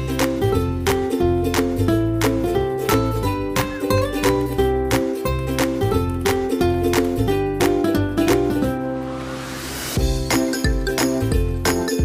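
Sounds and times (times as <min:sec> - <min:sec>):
plucked string tune with bass: 0:00.0 - 0:09.0.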